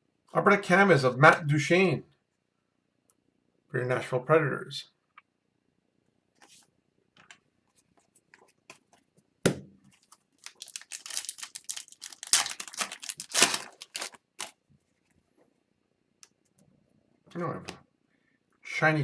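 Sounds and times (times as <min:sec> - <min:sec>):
wrapper crackling and tearing: 0:10.1 - 0:14.6
wrapper snapping: 0:10.4 - 0:14.6.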